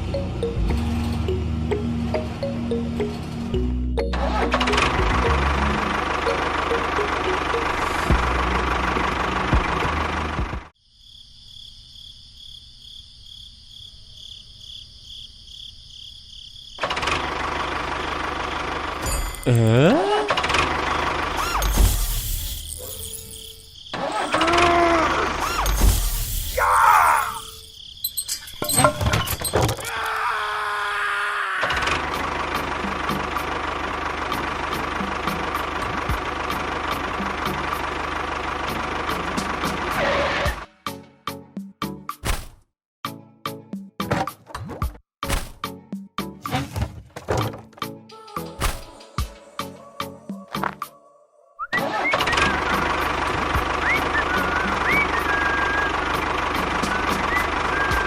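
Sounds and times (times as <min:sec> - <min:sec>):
small engine running: 0:00.0 - 0:10.7, 0:16.8 - 0:26.5, 0:31.7 - 0:40.6, 0:51.8 - 0:58.0.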